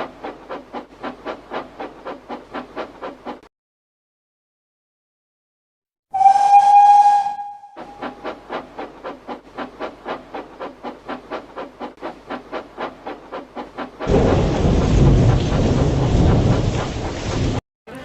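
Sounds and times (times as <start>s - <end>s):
steam engine chuffing: 0.0s - 3.5s, 6.2s - 17.6s
steam locomotive whistle: 6.1s - 8.1s.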